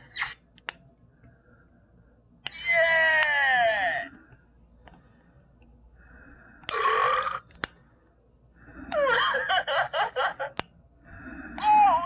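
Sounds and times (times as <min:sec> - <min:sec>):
sharp clicks: 0:00.0 - 0:00.8, 0:07.4 - 0:07.8
high-pitched burping: 0:06.7 - 0:07.4.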